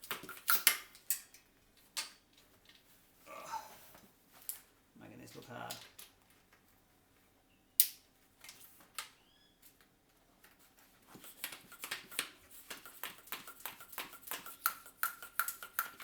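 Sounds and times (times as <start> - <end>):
bike pump strokes: 11.1 - 16.0.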